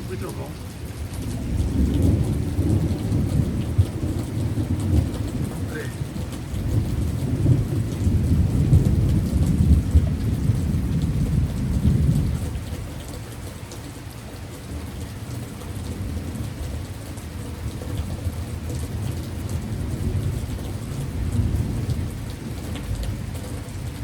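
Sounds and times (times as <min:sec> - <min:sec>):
thunder rumbling: 0:00.0 - 0:12.8, 0:18.2 - 0:24.0
heavy rain: 0:00.0 - 0:24.0.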